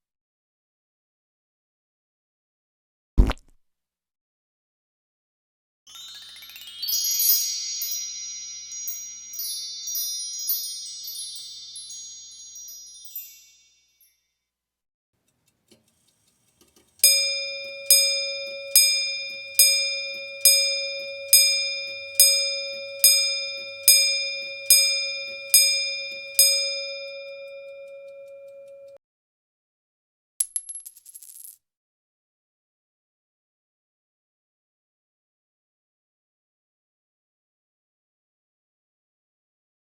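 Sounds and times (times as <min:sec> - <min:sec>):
shimmering rising chime tones: 0:05.9 - 0:14.3, 0:17.0 - 0:29.0
clock bell striking: 0:06.1 - 0:13.4, 0:17.0 - 0:29.0.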